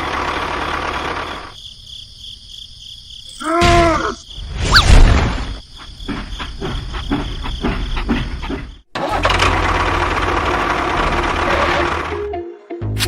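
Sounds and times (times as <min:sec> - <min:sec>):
engine chugging: 0:00.0 - 0:01.6, 0:06.6 - 0:12.3.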